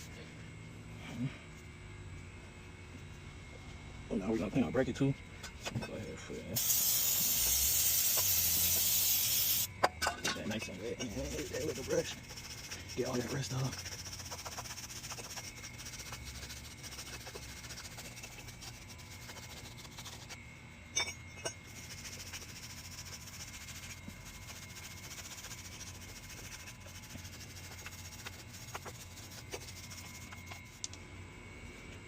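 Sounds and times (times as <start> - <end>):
wire brush scrubbing metal: 10.4 - 20.4, 21.6 - 30.8.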